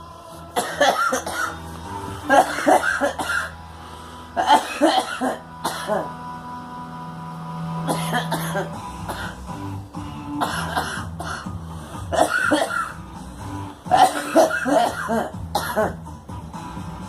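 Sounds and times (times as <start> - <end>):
girl coughing: 0.6 - 1.6, 2.3 - 3.5, 4.4 - 6.1, 7.9 - 9.4, 10.4 - 11.5, 12.1 - 12.9, 13.9 - 16.0.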